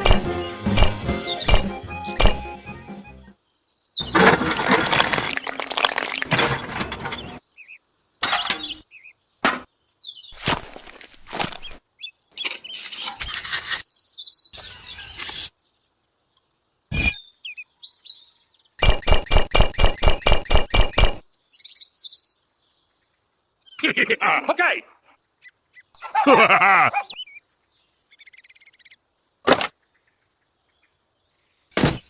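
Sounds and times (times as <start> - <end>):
clatters and knocks: 4.0 - 7.4.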